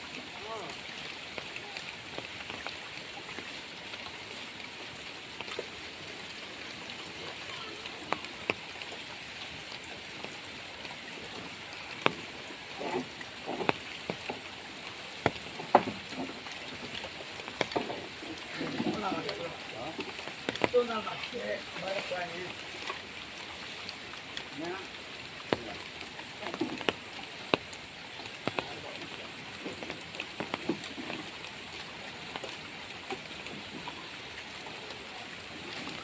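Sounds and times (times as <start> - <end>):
water hiss: 0.0 - 36.0.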